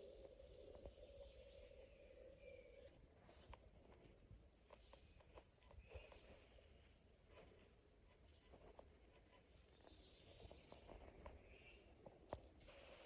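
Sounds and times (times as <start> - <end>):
faint bird chirps: 0.0 - 3.6.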